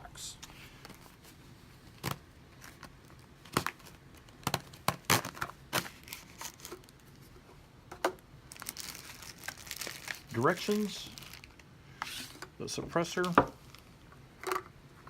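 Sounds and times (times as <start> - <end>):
tearing cardboard and paper: 3.5 - 7.0.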